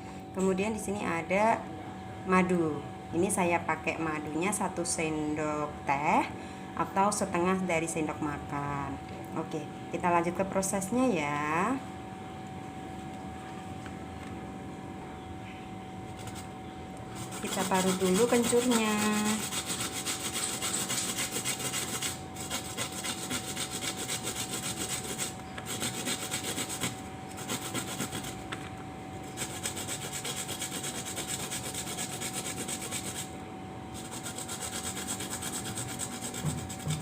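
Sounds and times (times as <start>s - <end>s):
ginger scraping on a grater: 17.2s - 28.4s, 29.3s - 33.3s, 34.0s - 37.0s.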